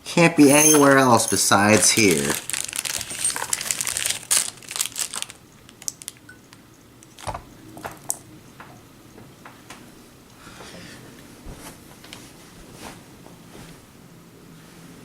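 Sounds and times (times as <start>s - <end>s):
plastic bags crinkling: 0.4s - 7.4s.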